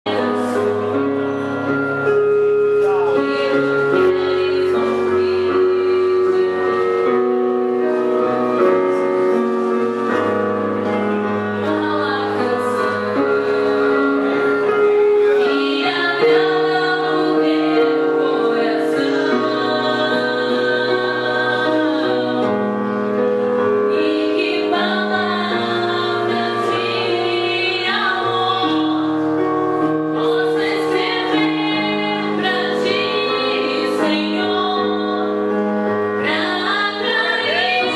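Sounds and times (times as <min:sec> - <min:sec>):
woman singing: 0:00.1 - 0:01.0, 0:03.0 - 0:07.2, 0:11.6 - 0:14.4, 0:15.3 - 0:22.7, 0:23.9 - 0:29.2, 0:30.1 - 0:35.6, 0:36.2 - 0:37.9.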